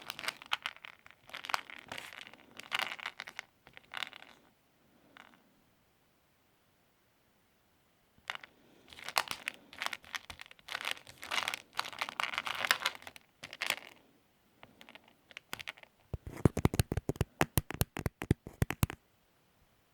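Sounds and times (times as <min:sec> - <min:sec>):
plastic packaging crinkling: 0:08.9 - 0:13.9, 0:14.8 - 0:19.0
sharp clicks: 0:16.2 - 0:19.0.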